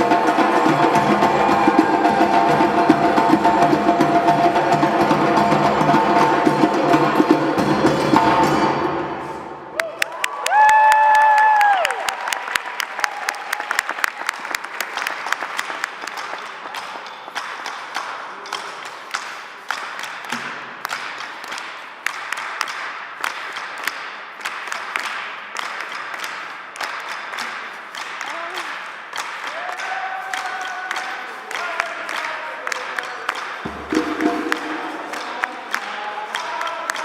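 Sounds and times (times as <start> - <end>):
audience applauding: 0.0 - 7.6, 9.7 - 18.2, 21.5 - 37.0.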